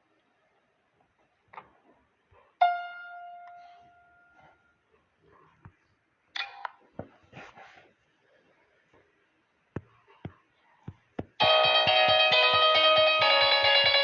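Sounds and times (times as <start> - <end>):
keyboard note ringing: 2.6 - 4.4, 11.4 - 14.0.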